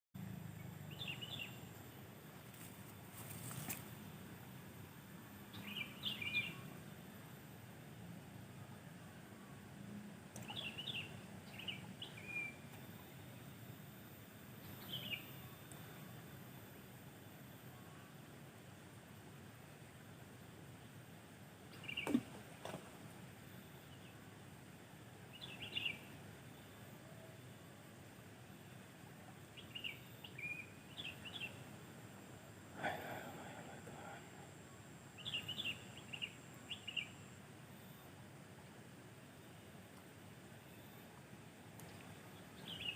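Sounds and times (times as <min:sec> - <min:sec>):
low outdoor rumble: 0:00.2 - 0:42.9
bird chirping: 0:00.9 - 0:01.7, 0:05.5 - 0:06.8, 0:10.4 - 0:12.7, 0:14.6 - 0:15.6, 0:21.7 - 0:22.3, 0:25.3 - 0:27.6, 0:29.6 - 0:31.6, 0:35.2 - 0:37.3, 0:41.9 - 0:42.9
rustling or splashing: 0:02.5 - 0:03.9.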